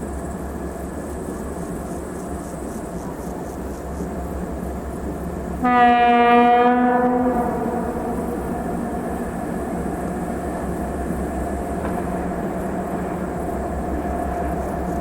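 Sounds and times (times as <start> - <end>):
diesel locomotive engine droning: 0.0 - 15.0.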